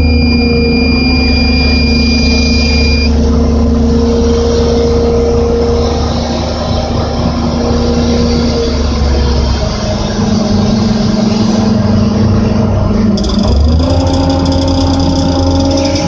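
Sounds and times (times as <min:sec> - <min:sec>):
high alarm tone: 0:00.0 - 0:03.2, 0:13.2 - 0:16.0
crane machinery humming: 0:00.0 - 0:16.0.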